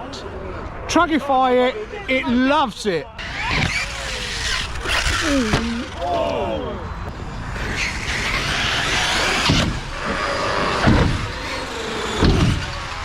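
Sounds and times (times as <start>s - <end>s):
electric motor whine: 3.2s - 6.4s, 7.0s - 13.0s
toy cars landing thuds: 3.2s - 6.4s, 7.0s - 13.0s
tyres rushing on concrete: 3.2s - 13.0s.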